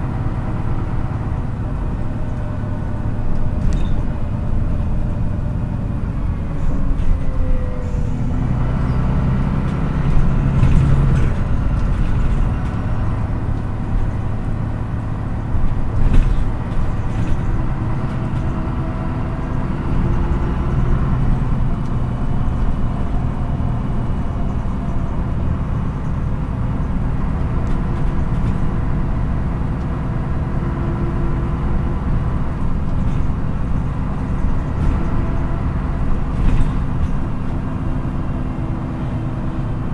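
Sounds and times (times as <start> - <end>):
bus diesel engine running: 0.0 - 39.9
rattles and knocks: 9.6 - 21.0, 32.6 - 38.3.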